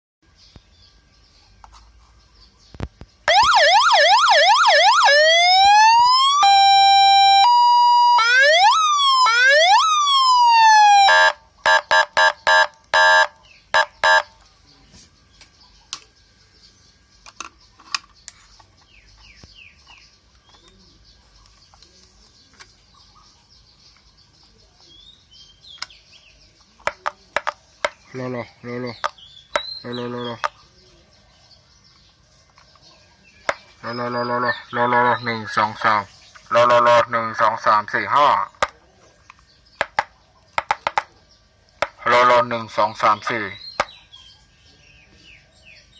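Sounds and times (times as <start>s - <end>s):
electronic siren: 3.3s - 14.4s.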